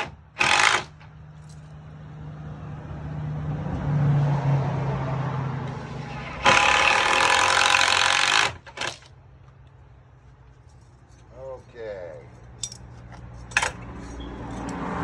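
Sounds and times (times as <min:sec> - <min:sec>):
power drill whine: 0:06.2 - 0:08.6.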